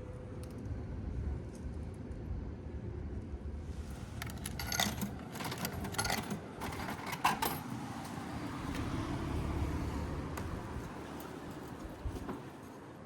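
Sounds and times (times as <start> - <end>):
small clicks and rattles: 4.1 - 7.7
steady low rumble: 9.9 - 11.0.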